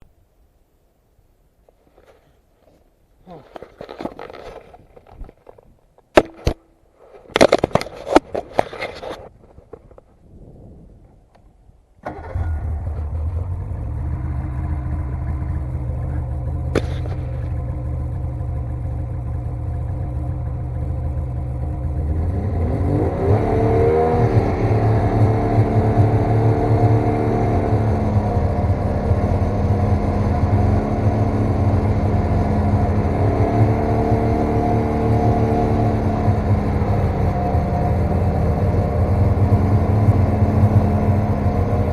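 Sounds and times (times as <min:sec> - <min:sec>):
snowmobile engine starting and revving: 0:12.0 - 0:41.9.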